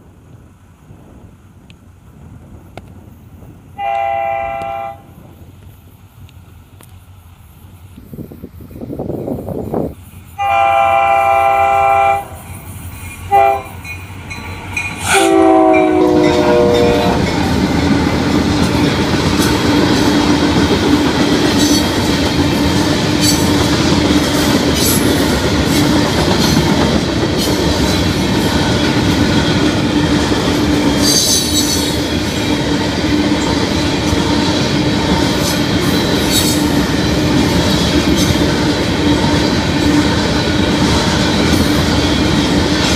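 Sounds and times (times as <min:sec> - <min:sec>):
locomotive air horn blasts: 0:03.8 - 0:05.2, 0:10.4 - 0:12.5, 0:13.3 - 0:13.8, 0:15.0 - 0:17.4
freight cars rumbling: 0:11.7 - 0:42.9
wheels clacking over rail joints: 0:12.4 - 0:42.9.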